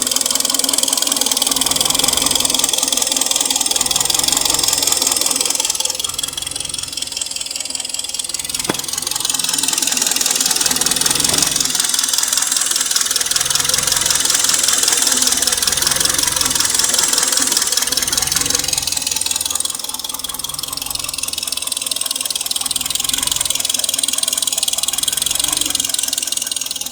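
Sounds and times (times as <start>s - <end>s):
car engine idling: 0.0s - 26.9s
fast engine knocking: 0.0s - 26.9s
sharp click: 8.6s - 9.5s.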